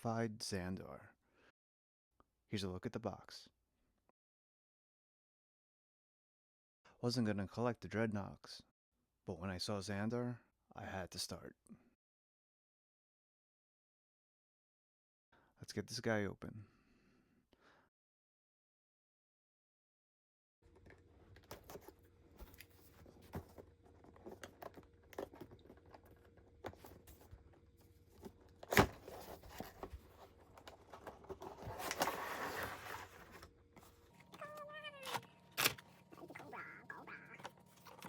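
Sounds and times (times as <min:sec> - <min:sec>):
packaging tearing and rustling: 0:28.6 - 0:33.4.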